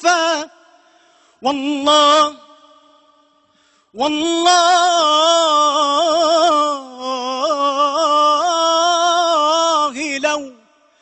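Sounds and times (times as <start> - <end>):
man singing unaccompanied: 0.0 - 0.7, 1.4 - 3.2, 4.0 - 10.8
singer breathing: 0.6 - 1.4, 3.1 - 4.0, 10.8 - 11.0.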